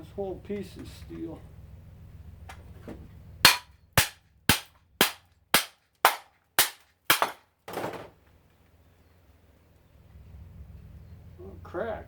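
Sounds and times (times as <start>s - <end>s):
hammer striking steel: 3.5s - 7.4s.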